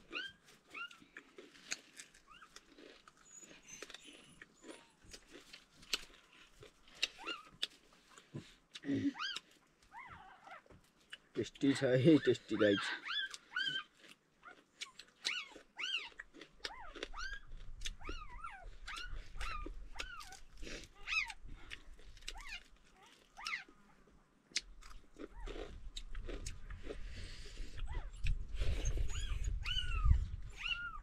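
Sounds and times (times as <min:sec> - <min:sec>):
crunching and chewing: 0:00.0 - 0:31.0
dog whining: 0:09.0 - 0:10.7, 0:12.2 - 0:13.9, 0:15.2 - 0:21.7, 0:27.8 - 0:31.0.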